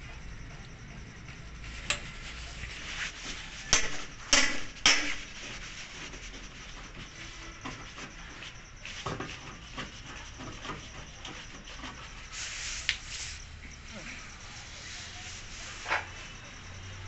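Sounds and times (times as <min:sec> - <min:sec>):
low background hum: 0:00.0 - 0:17.0
sharp knocks of hard objects: 0:03.7 - 0:05.2.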